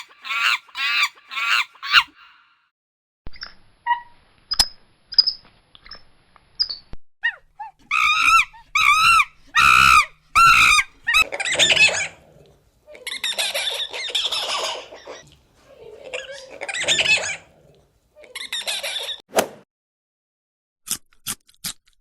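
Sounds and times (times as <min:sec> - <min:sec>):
high-pitched arching animal calls: 0:00.0 - 0:02.4, 0:07.3 - 0:15.2
animal chirps: 0:03.8 - 0:06.0, 0:06.6 - 0:12.2.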